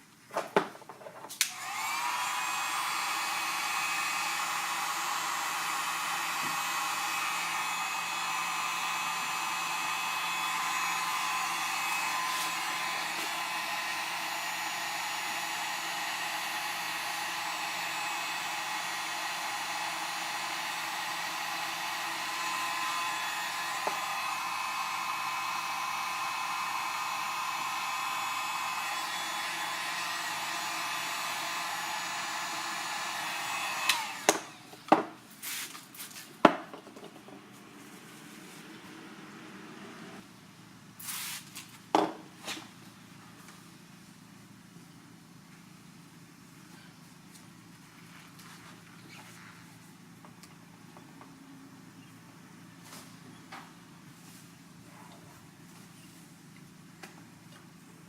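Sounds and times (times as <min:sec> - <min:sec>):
heat gun blowing with whine: 0:01.4 - 0:34.9.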